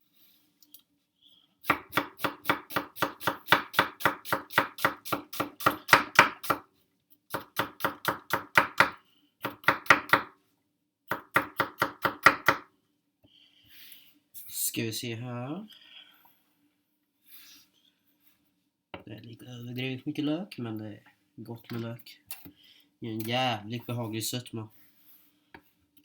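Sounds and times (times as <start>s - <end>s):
knife chopping on cutting board: 1.7s - 6.6s, 7.3s - 10.3s, 11.1s - 12.7s.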